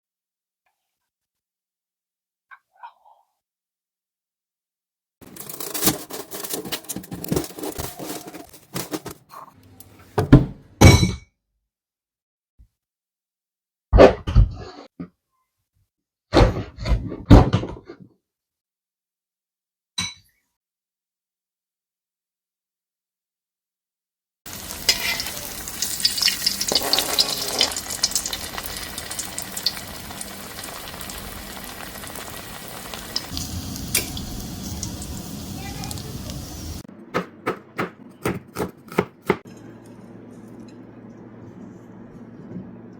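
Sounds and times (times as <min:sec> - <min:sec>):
hard objects clattering: 0:05.2 - 0:09.3
fish sizzling in hot oil: 0:24.5 - 0:36.8.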